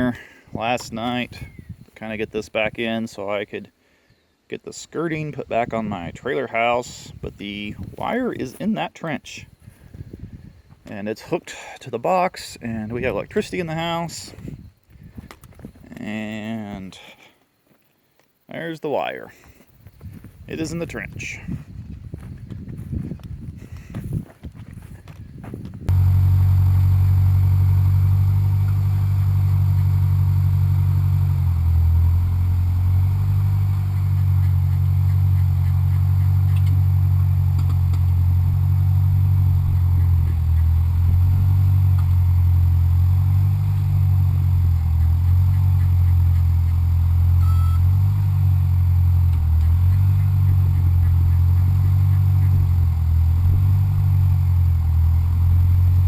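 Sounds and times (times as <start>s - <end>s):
backhoe engine running: 21.3s - 56.0s.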